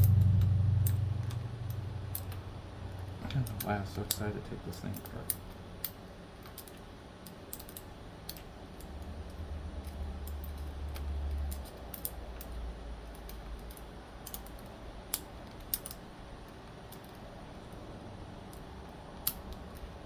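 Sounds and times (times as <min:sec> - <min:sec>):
small tools clicking and tapping: 0:00.0 - 0:02.4, 0:03.3 - 0:17.2, 0:18.5 - 0:20.0
low handling rumble: 0:00.0 - 0:05.5.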